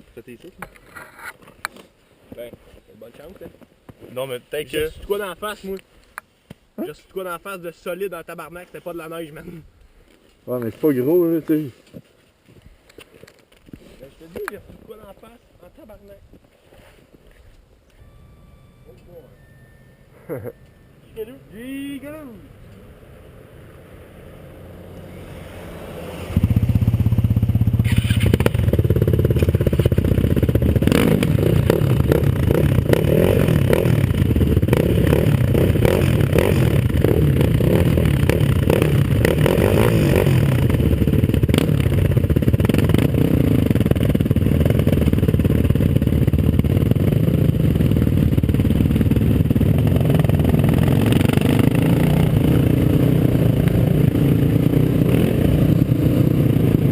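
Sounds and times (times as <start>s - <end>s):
atv engine running hard: 25.2s - 56.9s.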